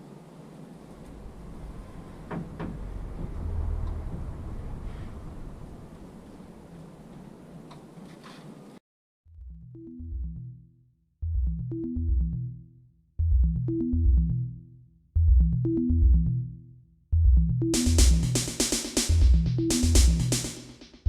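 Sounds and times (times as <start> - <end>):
electronic music with bass and synth: 9.4 - 21.0
drums and cymbals: 17.8 - 21.0.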